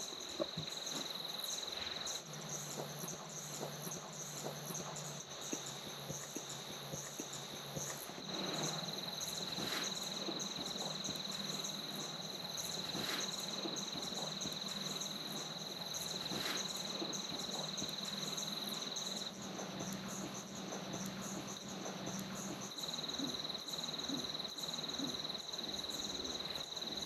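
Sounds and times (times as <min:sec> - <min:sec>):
insects trilling: 0:00.0 - 0:27.0.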